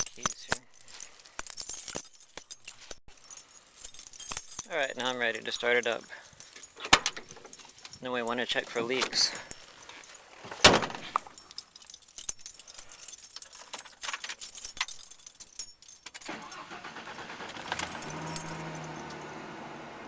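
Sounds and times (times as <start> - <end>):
keys jangling at ignition: 0.0 - 20.0
truck engine starting and idling: 16.3 - 20.0.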